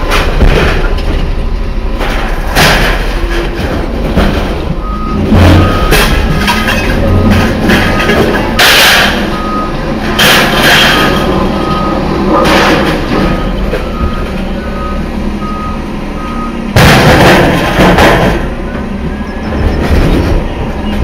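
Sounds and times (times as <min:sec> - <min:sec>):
reversing alarm beeps: 0:04.8 - 0:08.3, 0:09.2 - 0:09.9, 0:11.3 - 0:12.1, 0:13.1 - 0:16.7, 0:18.6 - 0:21.0
loud noise bursts: 0:16.7 - 0:20.9.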